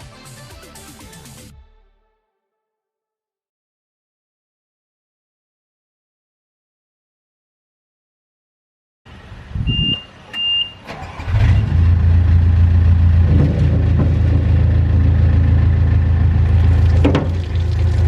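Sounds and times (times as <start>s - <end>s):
diesel engine starting and running: 9.1s - 18.0s
short high beeps: 9.7s - 10.8s.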